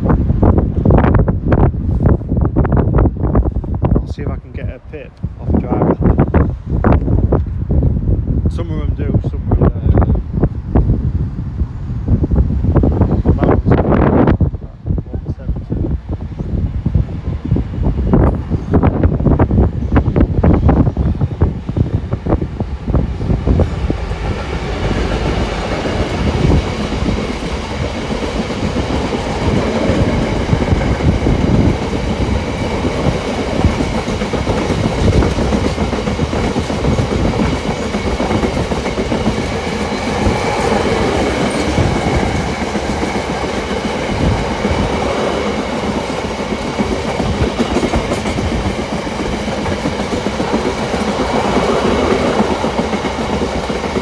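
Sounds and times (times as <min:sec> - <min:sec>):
diesel locomotive hauling freight train: 0:00.0 - 0:54.0
wheels clacking over rail joints: 0:23.8 - 0:54.0.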